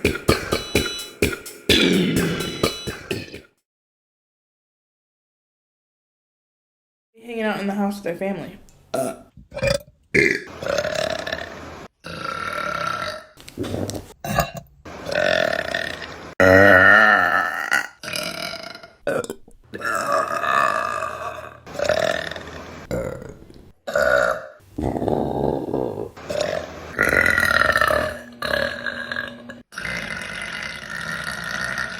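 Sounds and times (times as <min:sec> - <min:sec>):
loud belches: 0:01.7 - 0:03.3, 0:08.9 - 0:13.4, 0:14.2 - 0:31.9.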